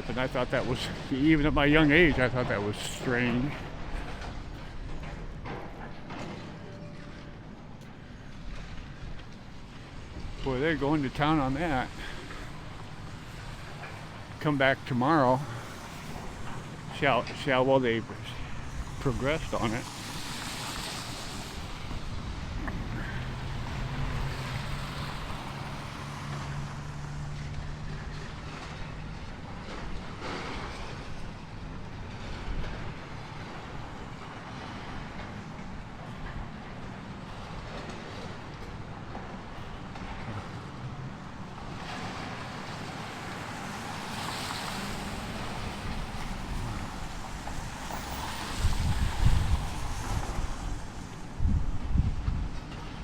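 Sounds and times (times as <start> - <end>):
demolition machinery: 0.5 - 20.0
wind on microphone: 45.5 - 53.0.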